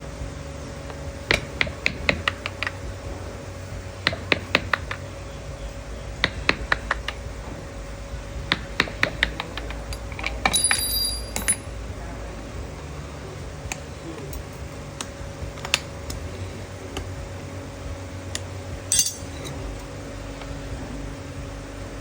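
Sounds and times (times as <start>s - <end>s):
hammer tapping on metal: 1.3s - 2.8s, 4.0s - 5.0s, 6.2s - 7.2s, 8.5s - 11.6s
high ringing: 10.4s - 11.8s, 18.9s - 19.6s.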